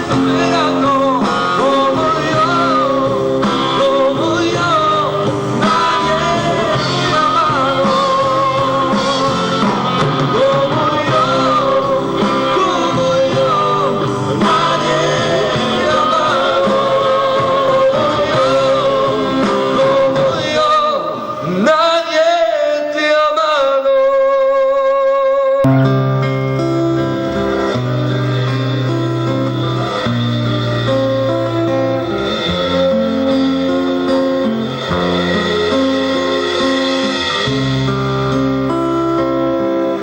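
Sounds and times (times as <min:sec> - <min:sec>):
rock song with singing: 0:00.0 - 0:40.0.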